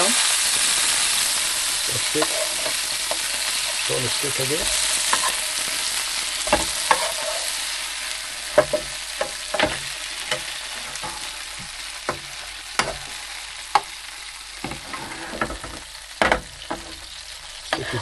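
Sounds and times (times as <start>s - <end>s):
steak sizzling in a frying pan: 0.0s - 18.0s
utensil clicking against pan: 12.1s - 13.1s.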